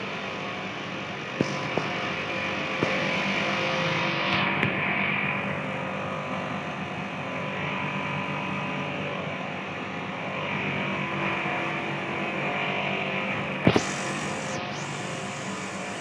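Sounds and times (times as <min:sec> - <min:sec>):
machine humming: 0:13.7 - 0:16.0
sharp clicks: 0:13.7 - 0:16.0.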